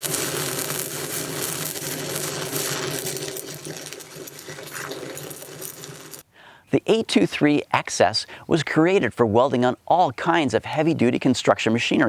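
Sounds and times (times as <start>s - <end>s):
welding arc crackling and sizzling: 0.0s - 6.2s.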